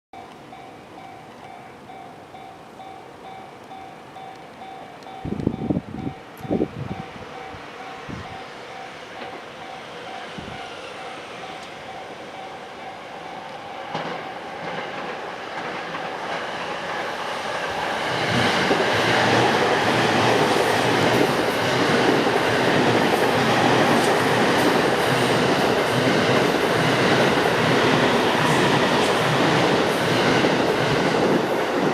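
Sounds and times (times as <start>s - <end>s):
crossing warning bell dinging: 0.2s - 15.2s
electric train passing: 0.2s - 31.9s.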